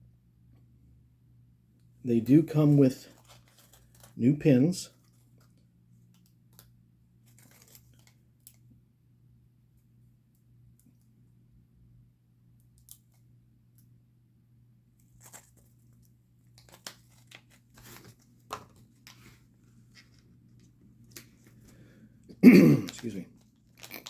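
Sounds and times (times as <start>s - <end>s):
plastic bag rustling and tearing: 3.0s - 4.2s, 7.2s - 8.2s, 22.9s - 24.0s.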